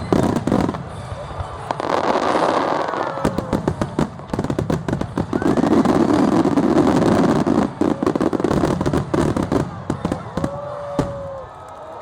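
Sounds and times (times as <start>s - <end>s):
firework bangs and crackling: 0.0s - 12.0s
rising firework whistle: 4.9s - 11.8s.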